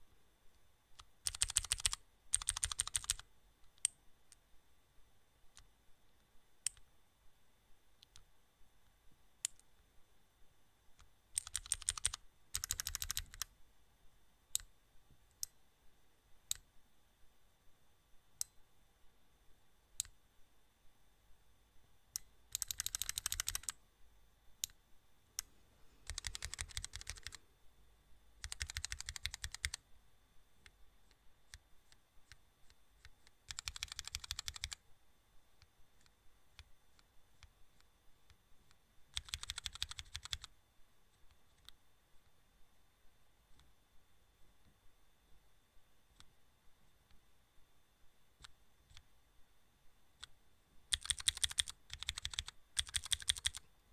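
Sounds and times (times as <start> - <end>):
bursts of rapid clicking: 50.9 - 53.6.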